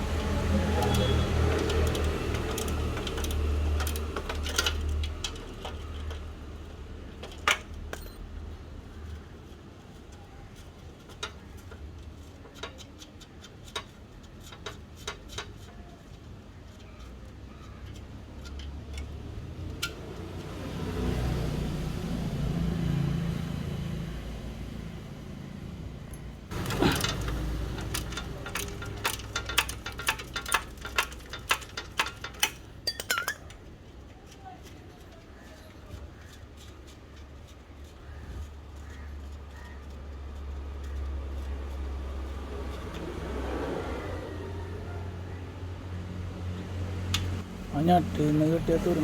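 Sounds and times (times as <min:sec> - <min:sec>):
passing vehicle: 0:20.0 - 0:29.3, 0:40.5 - 0:49.0
hand tools clicking on metal: 0:26.1 - 0:33.6.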